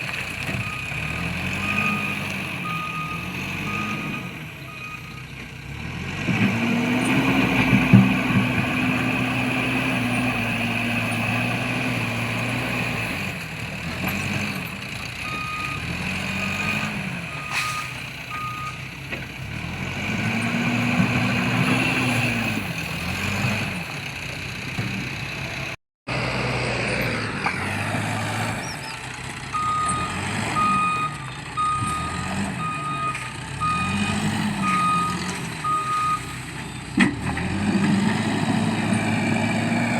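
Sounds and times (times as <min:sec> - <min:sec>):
diesel engine revving: 0:00.0 - 0:39.9
reversing alarm beeping: 0:00.6 - 0:05.3, 0:15.2 - 0:15.9, 0:17.3 - 0:18.8, 0:29.5 - 0:36.4.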